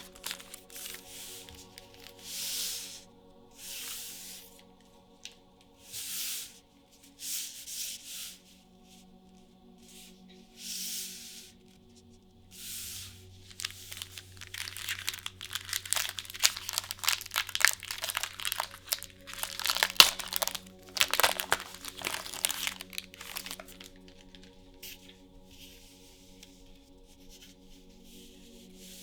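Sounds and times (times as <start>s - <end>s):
foil wrapper tearing and crinkling: 0.0s - 2.2s, 13.4s - 24.5s
packaging sliding swishes: 0.0s - 3.0s, 13.5s - 24.5s.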